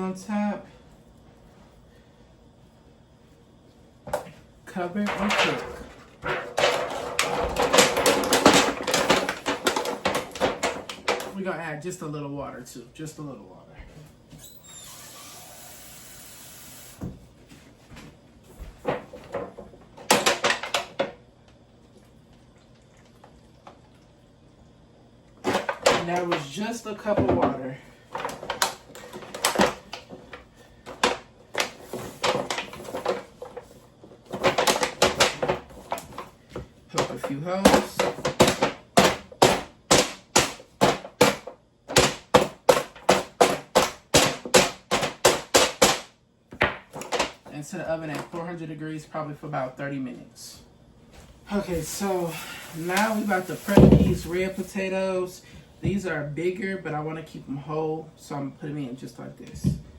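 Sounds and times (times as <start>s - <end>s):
foil being poked crinkling: 51.6s - 54.7s.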